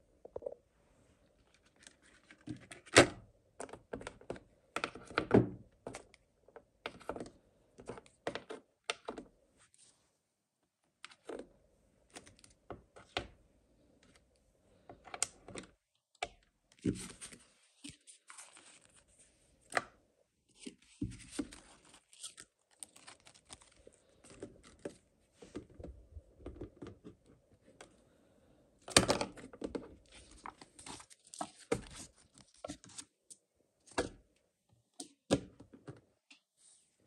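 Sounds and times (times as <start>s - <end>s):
packaging tearing and crinkling: 21.8s - 23.8s.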